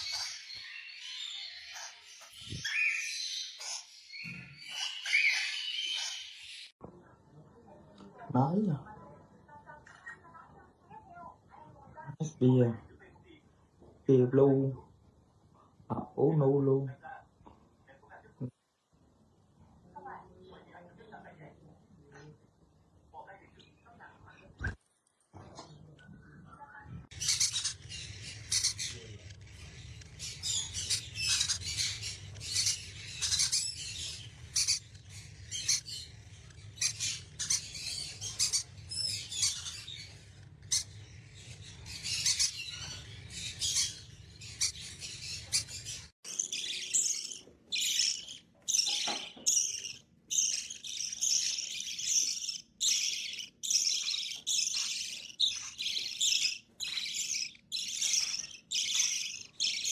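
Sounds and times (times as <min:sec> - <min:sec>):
birds chirping: 0:00.0 - 0:06.8, 0:27.0 - 0:59.9.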